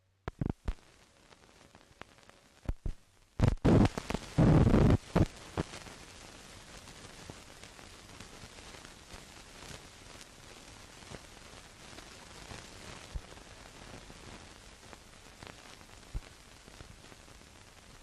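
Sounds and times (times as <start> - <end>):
steady film hiss: 0.0 - 18.0
film clicks and pops: 0.2 - 0.8, 2.6 - 4.2.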